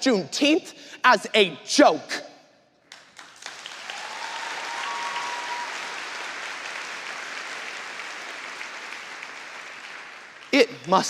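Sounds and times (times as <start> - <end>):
audience applauding: 2.9 - 11.0.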